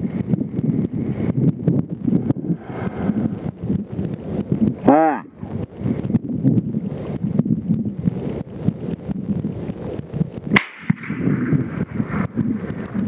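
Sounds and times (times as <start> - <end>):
wind buffeting microphone: 0.0 - 13.0
sharp crack: 9.7 - 13.0.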